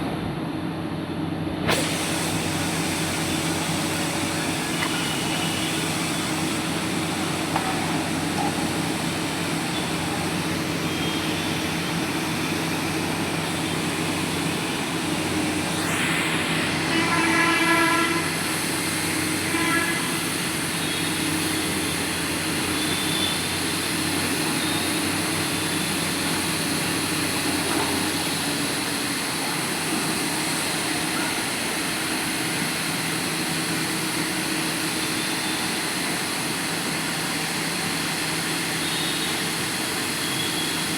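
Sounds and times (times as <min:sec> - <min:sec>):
heavy diesel engine running: 0:00.0 - 0:40.9
short horn tone: 0:16.7 - 0:18.5, 0:19.4 - 0:21.2.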